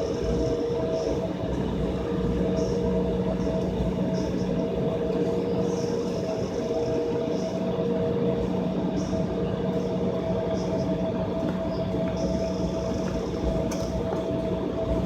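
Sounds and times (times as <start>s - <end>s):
jet engines heard inside cabin: 0.0s - 15.0s.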